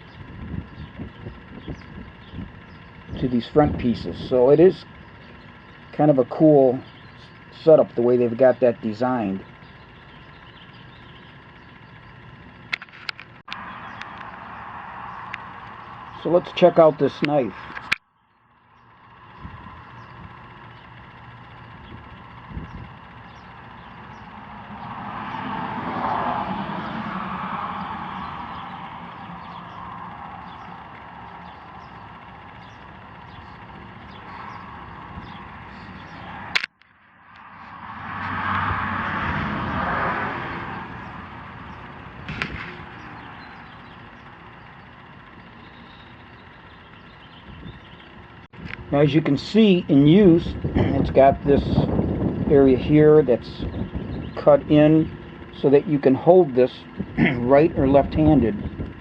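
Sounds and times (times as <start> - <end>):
road noise: 0.0 - 59.0
vehicle engine rumble: 0.0 - 59.0
sharp click: 36.5 - 37.5, 42.3 - 42.9.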